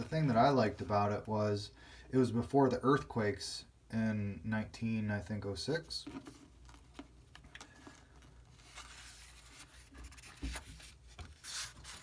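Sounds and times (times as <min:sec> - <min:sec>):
paper rubbing and rustling: 0:07.9 - 0:12.0.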